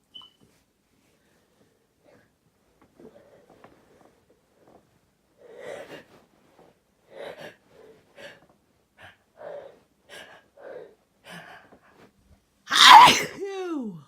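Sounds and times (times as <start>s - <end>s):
person gasping before a sneeze: 12.7s - 13.5s.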